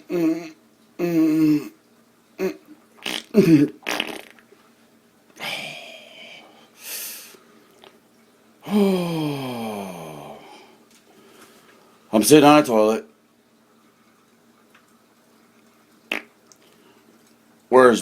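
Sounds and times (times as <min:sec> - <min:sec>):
man grunting: 0:05.4 - 0:06.4, 0:08.6 - 0:10.5
man hissing: 0:05.4 - 0:07.4, 0:08.6 - 0:10.7
man's falling vocal sound: 0:08.6 - 0:10.7.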